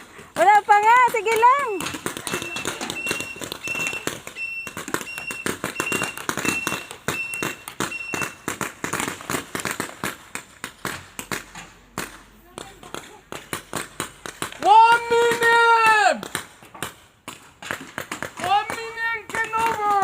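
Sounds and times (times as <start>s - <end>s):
airsoft guns firing: 0.0s - 20.0s
short high beeps: 2.3s - 8.5s.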